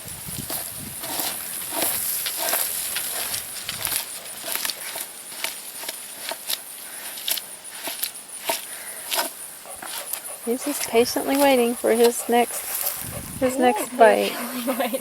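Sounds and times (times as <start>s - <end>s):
tool scraping raw hide: 0.3s - 14.2s.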